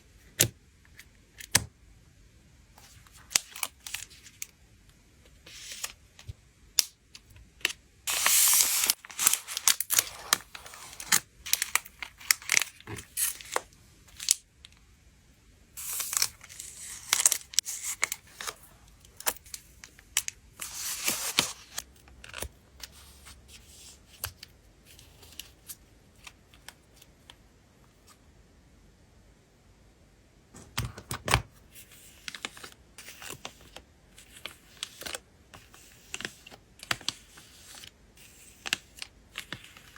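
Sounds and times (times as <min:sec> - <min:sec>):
plastic sleeves crinkling: 0:08.1 - 0:14.4, 0:15.8 - 0:22.5.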